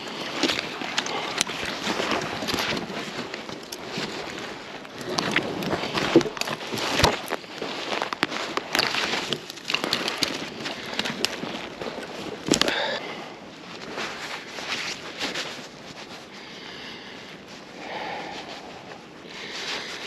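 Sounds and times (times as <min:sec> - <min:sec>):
footsteps crunching in snow: 0:01.5 - 0:12.9.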